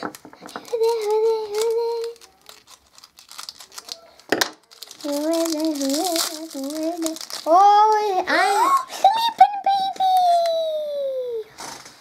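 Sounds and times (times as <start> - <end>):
plastic packaging crinkling: 0.0 - 10.6
sharp plastic crackle: 0.0 - 10.7
child singing wordless notes: 5.0 - 8.3.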